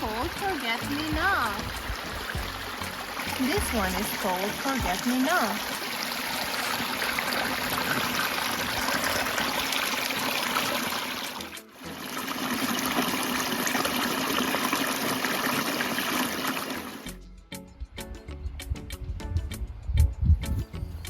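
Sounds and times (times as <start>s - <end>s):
plucked music: 0.0s - 5.5s
stream water running: 0.0s - 17.2s.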